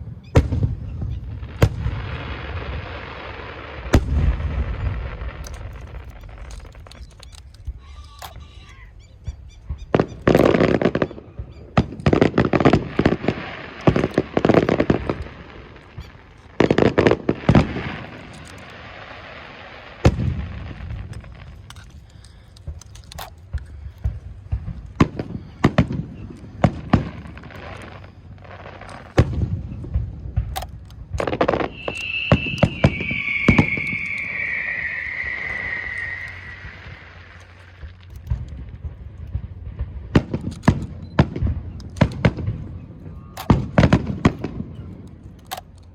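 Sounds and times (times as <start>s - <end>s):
firework shells bursting: 0.2s - 45.9s
firework whistle falling: 31.4s - 37.9s
low rumble: 31.8s - 40.2s.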